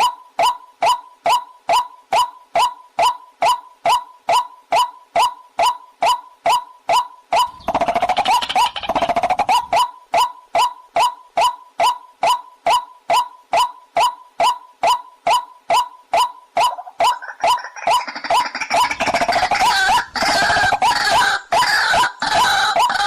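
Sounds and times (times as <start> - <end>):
rapid bird chattering: 7.4 - 9.8, 16.6 - 23.0
waterhen calling: 16.2 - 23.0.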